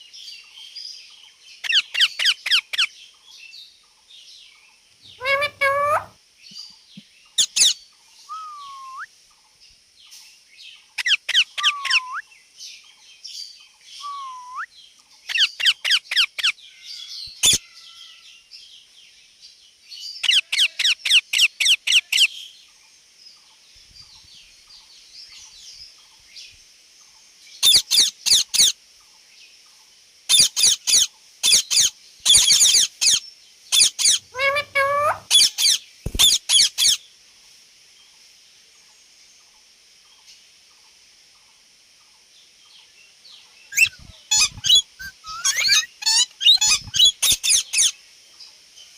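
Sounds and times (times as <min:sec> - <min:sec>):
parrot chirping: 0:05.1 - 0:06.1, 0:07.4 - 0:09.0, 0:11.0 - 0:12.2, 0:17.4 - 0:17.6, 0:30.3 - 0:37.0, 0:43.7 - 0:48.0
parrot whistles: 0:05.2 - 0:06.1, 0:08.3 - 0:09.1, 0:11.6 - 0:12.2, 0:14.0 - 0:14.7, 0:33.8 - 0:35.5, 0:43.7 - 0:47.6.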